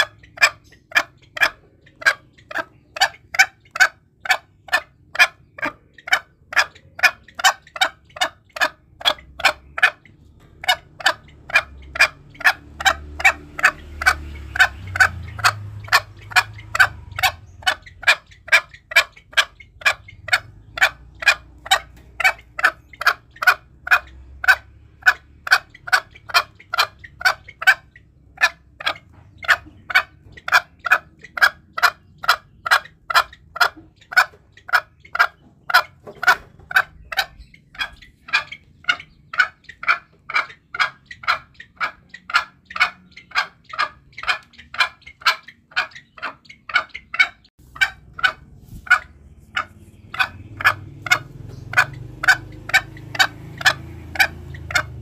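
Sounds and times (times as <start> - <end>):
junglefowl sharp calls: 0.0 - 55.0.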